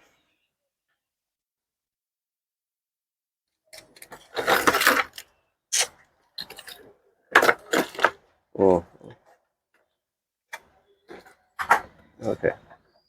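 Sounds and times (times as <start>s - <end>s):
small hard parts clattering: 3.7s - 5.3s, 6.3s - 8.3s.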